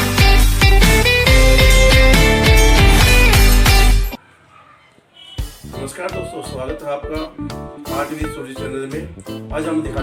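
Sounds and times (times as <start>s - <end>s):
music with heavy beat and guitar: 0.0s - 4.2s, 5.4s - 8.4s.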